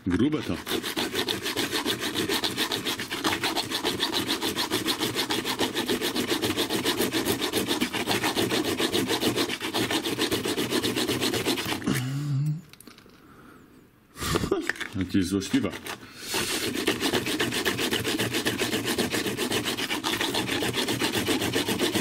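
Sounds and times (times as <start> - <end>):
hand saw cutting steel: 0.0 - 12.0, 15.4 - 22.0
person humming: 11.9 - 12.7.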